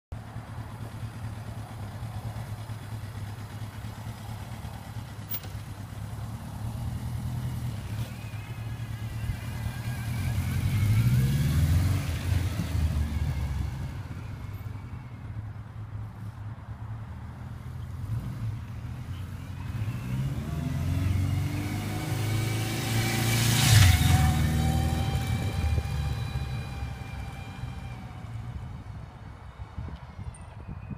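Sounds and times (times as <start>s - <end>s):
road noise: 0.1s - 30.9s
faint high-pitched wheel squeal: 7.7s - 11.0s, 12.6s - 16.4s, 23.6s - 30.9s.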